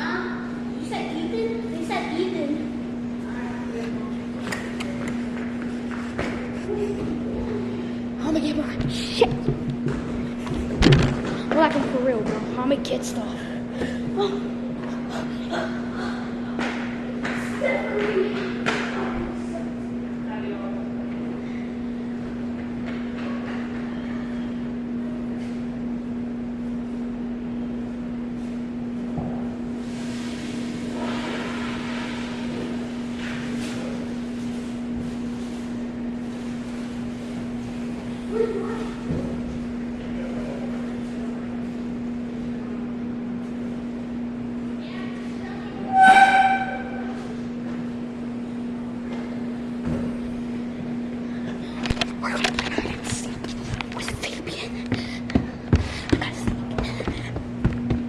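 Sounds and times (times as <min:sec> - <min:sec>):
steady low hum: 0:00.0 - 0:58.0
high-pitched whistle: 0:45.9 - 0:47.1.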